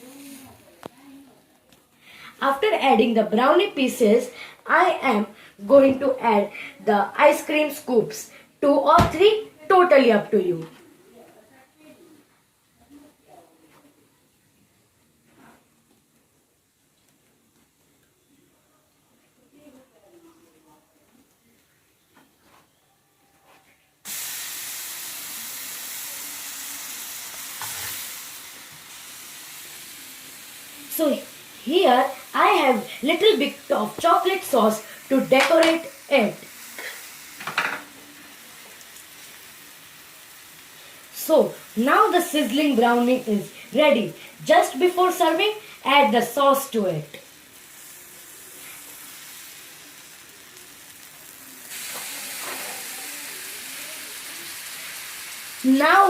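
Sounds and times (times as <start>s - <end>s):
food sizzling on hot plate: 0.0s - 1.4s, 24.0s - 56.0s.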